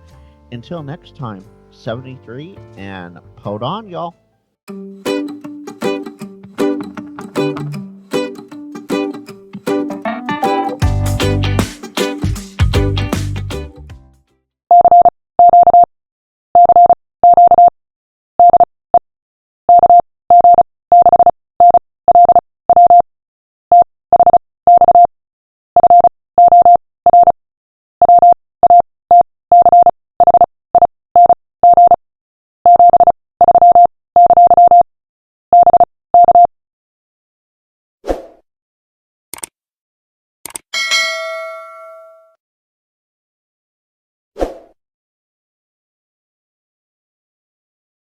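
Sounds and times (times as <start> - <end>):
morse code beeps: 14.7 - 15.9, 16.6 - 17.7, 18.4 - 18.7, 19.7 - 23.1, 23.7 - 25.1, 25.8 - 27.4, 28.0 - 32.0, 32.7 - 34.9, 35.5 - 36.5.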